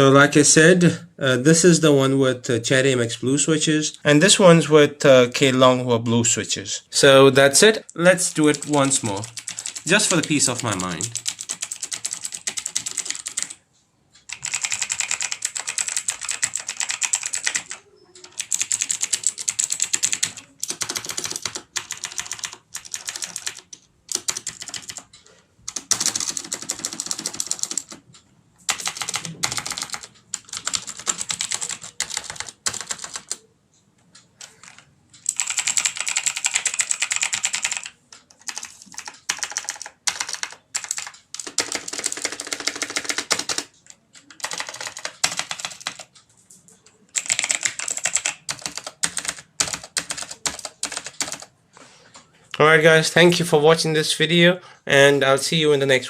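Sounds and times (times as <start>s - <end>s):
clicky mechanical keyboard typing: 8.1s - 13.6s, 14.2s - 33.5s, 34.1s - 51.5s.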